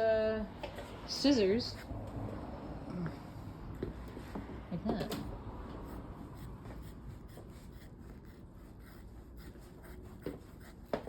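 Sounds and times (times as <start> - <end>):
scissors cutting foam: 6.7 - 11.0.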